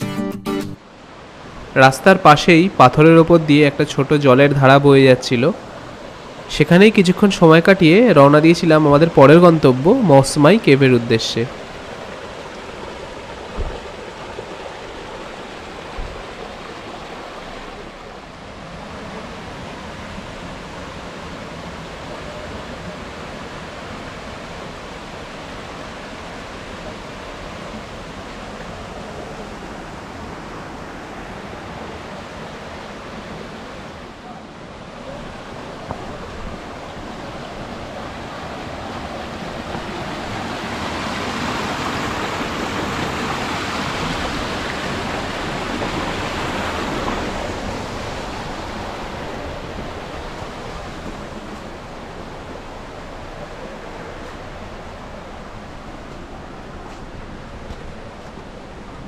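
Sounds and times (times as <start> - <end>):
stream rushing over rocks: 0.8 - 59.0
light knocks: 13.5 - 13.9.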